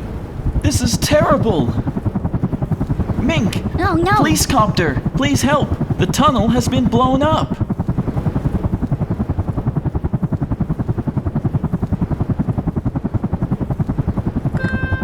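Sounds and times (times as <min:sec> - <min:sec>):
helicopter rotor chopping: 0:00.0 - 0:15.0
pitched musical notes: 0:14.6 - 0:15.0.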